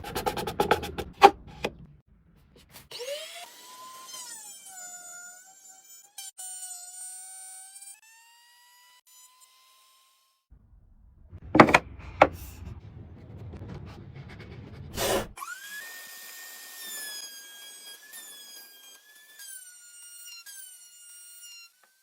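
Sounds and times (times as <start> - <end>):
power tool rumbling: 10.6 - 16.0
sharp knocks: 11.3 - 14.1.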